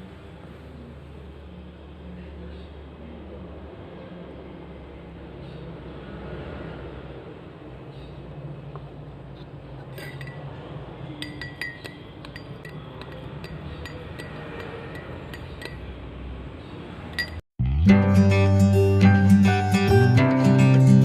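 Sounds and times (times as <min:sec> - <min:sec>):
glass clinking: 0:09.9 - 0:15.9, 0:17.1 - 0:17.4.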